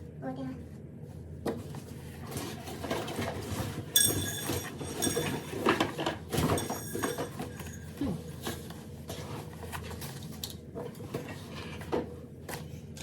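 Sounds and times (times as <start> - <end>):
packaging rustling and scraping: 1.6 - 12.8.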